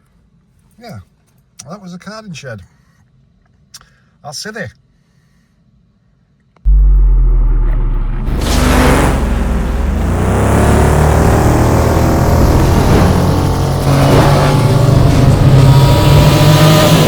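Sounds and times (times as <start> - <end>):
engine rumbling and revving: 6.7 - 17.0.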